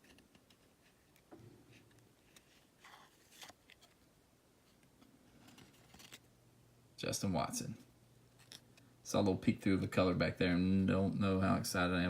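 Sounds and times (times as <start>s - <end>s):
trading cards being handled: 0.0s - 4.1s, 4.7s - 6.3s.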